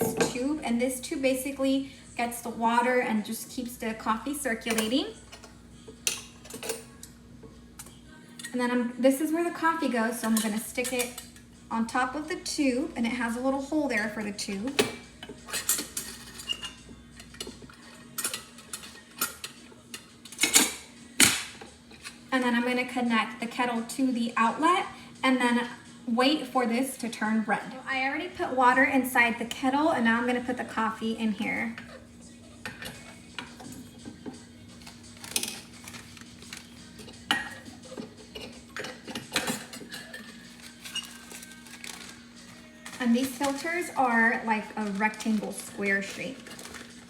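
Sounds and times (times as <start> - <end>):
metal percolator parts clinking: 4.6 - 7.1, 13.9 - 21.3, 32.6 - 47.0.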